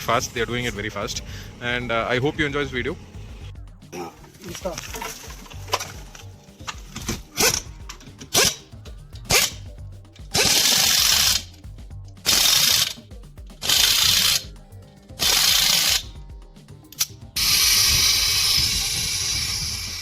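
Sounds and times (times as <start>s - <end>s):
impact wrench bursts: 5.0s - 8.6s, 9.3s - 9.6s, 10.3s - 11.6s, 12.2s - 13.0s, 13.6s - 14.5s, 15.2s - 16.1s, 17.0s - 20.0s.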